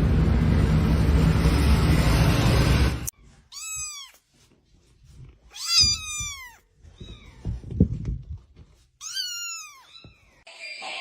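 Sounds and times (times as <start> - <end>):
cat meowing: 3.5 - 4.2, 5.5 - 7.6, 9.0 - 10.4
low rustling and knocking: 4.8 - 9.0.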